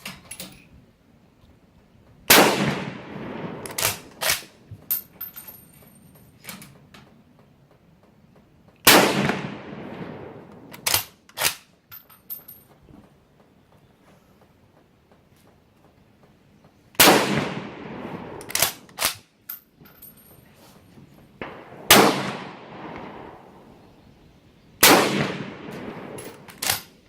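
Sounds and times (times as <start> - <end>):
echoing rifle shots: 2.3 - 4.7, 8.8 - 11.6, 17.0 - 19.2, 21.4 - 24.0, 24.8 - 27.0.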